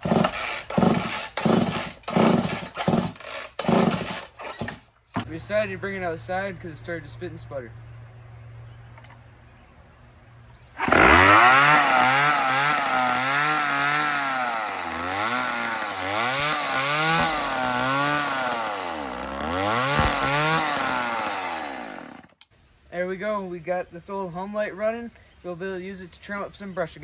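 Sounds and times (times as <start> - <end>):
chainsaw engine revving: 0.0 - 5.3, 10.8 - 22.4.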